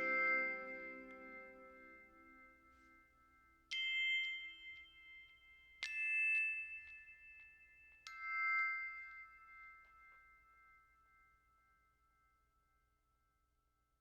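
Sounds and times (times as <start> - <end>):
struck bell-like notes: 0.0 - 2.6.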